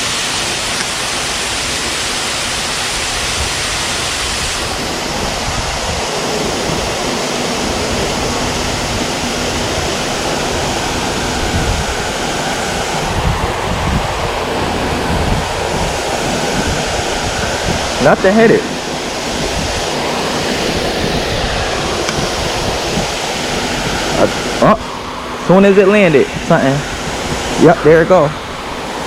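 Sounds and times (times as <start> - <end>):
waterfall rushing into creek: 0.0 - 29.0.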